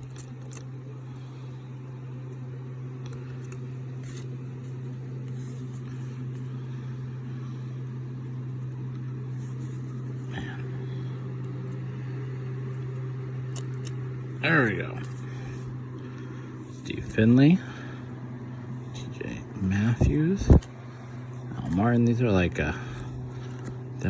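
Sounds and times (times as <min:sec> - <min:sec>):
steady low hum: 0:00.0 - 0:24.0
baseball cards rustling: 0:03.0 - 0:06.6.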